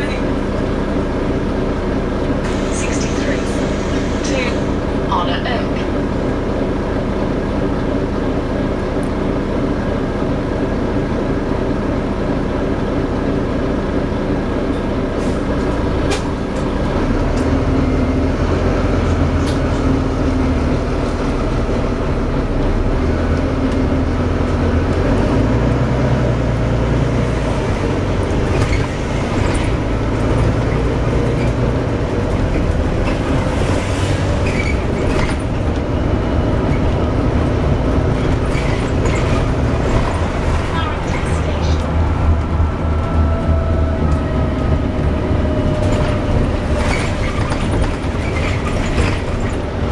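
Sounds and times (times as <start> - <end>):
bus engine drone: 0.0 - 49.9
rattles and clicks: 45.7 - 49.9.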